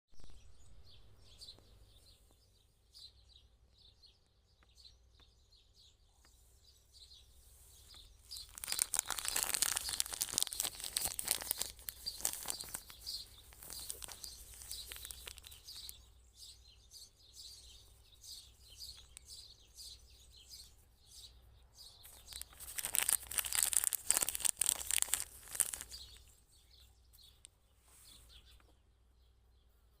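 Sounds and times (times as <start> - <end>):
crinkly fabric toy rustling: 7.4 - 16.0, 22.0 - 26.3.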